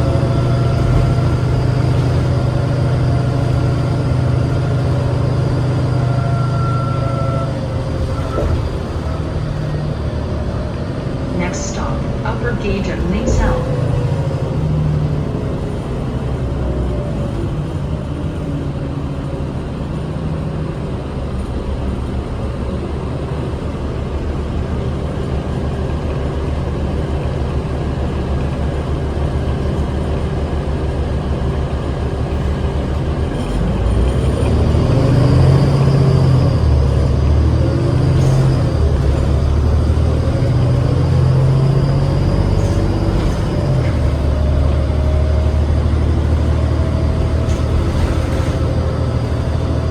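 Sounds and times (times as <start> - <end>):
drivetrain whine: 0.0 - 17.8
diesel bus engine running: 0.0 - 49.9.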